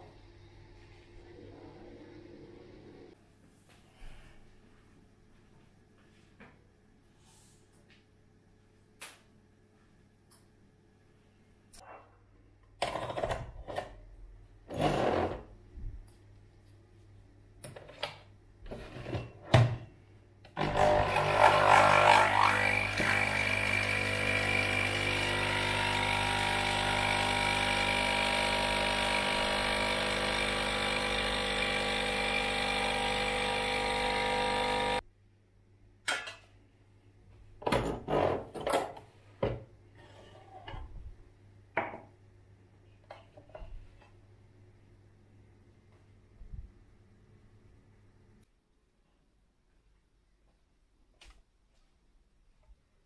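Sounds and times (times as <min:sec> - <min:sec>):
electric motor whining: 0:20.6 - 0:35.0.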